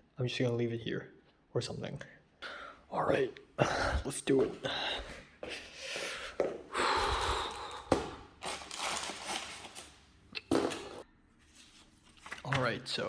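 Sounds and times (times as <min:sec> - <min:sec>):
rustling and handling noises: 0:08.4 - 0:13.0.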